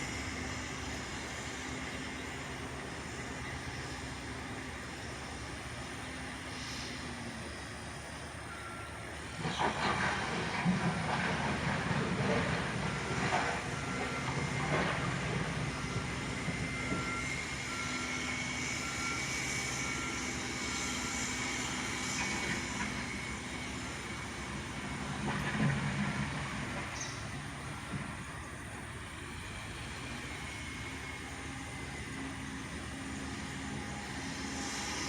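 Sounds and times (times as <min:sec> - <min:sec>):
diesel engine under load: 0:00.0 - 0:35.0
faint beep: 0:08.5 - 0:09.0
scraping and clanking gravel: 0:09.4 - 0:15.2.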